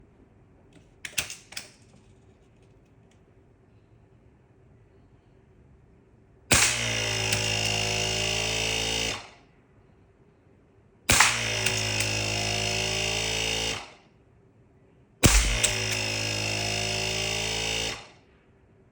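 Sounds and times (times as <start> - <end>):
air gun shot crack: 6.5 - 6.8, 15.2 - 15.8
solenoid valve buzz: 6.5 - 9.2, 11.2 - 13.8, 15.2 - 18.1.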